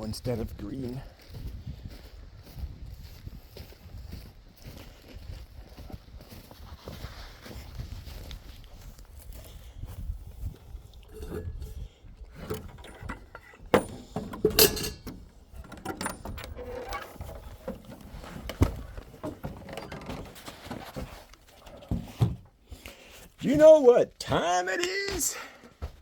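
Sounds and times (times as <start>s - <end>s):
handling clicks and rattles: 11.1s - 22.5s.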